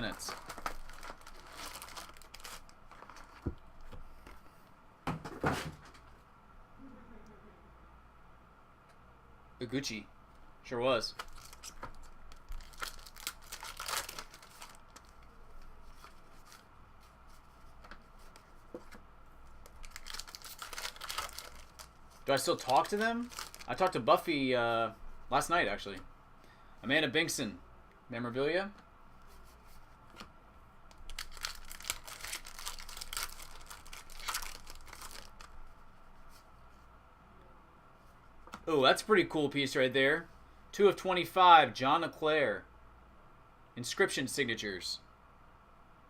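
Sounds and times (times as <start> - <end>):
card pack wrappers tearing: 0.0 - 3.4, 11.2 - 15.3, 19.6 - 24.0, 30.9 - 35.5.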